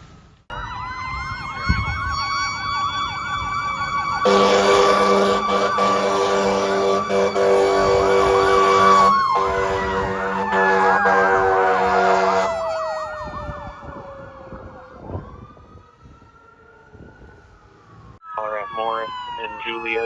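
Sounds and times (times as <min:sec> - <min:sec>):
electronic yelp siren: 0:00.5 - 0:20.0
faint siren wail: 0:00.5 - 0:20.0
siren wail: 0:00.5 - 0:20.0
fire engine air horn blasting: 0:04.0 - 0:14.0.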